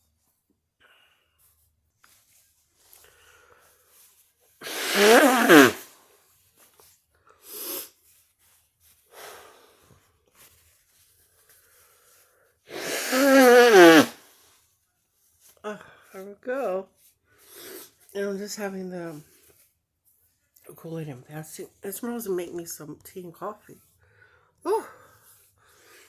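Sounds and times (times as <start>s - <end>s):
soft short sniffs: 0.8s - 6.0s, 6.8s - 14.7s, 17.3s - 18.1s
person blowing nose: 4.6s - 6.0s, 7.4s - 8.2s, 9.0s - 9.8s, 12.7s - 14.4s, 17.4s - 18.0s.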